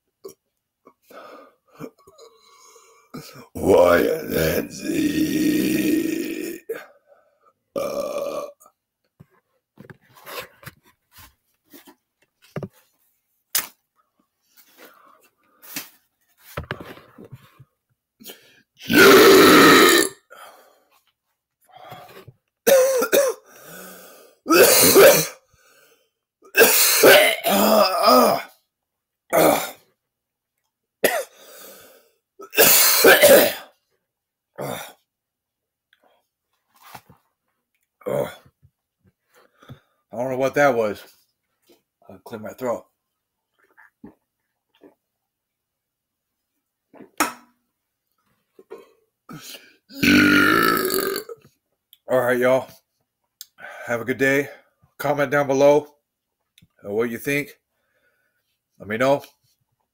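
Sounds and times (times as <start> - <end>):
belches: 2.2 - 7.0, 18.8 - 20.5, 49.3 - 51.4
voiced grunt: 3.2 - 6.9, 18.8 - 20.2, 38.0 - 38.4
man coughing: 22.7 - 23.4, 24.5 - 25.4, 26.5 - 27.8, 31.0 - 31.3, 32.4 - 33.7
man clearing his throat: 24.5 - 25.4, 26.5 - 28.4, 32.4 - 33.7.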